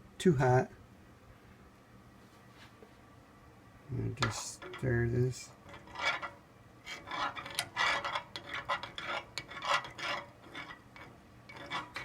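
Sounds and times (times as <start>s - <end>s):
spoon scraping a pan: 4.1s - 12.0s.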